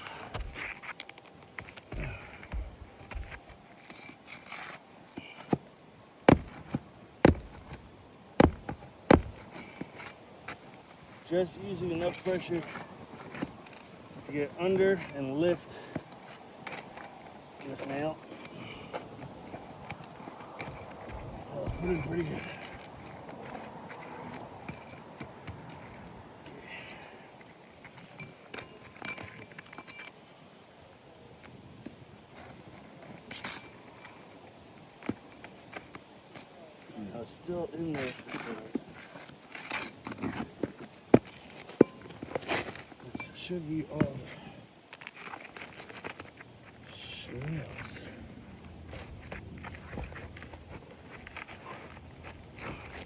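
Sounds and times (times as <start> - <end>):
sharp metallic clinks: 0.0 - 5.5, 8.4 - 26.1, 27.9 - 30.3, 33.2 - 34.4, 37.7 - 40.4, 41.7 - 44.3
pry bar clicking under shingles: 0.0 - 10.9, 11.8 - 26.2
pry bar strikes: 6.3 - 10.2.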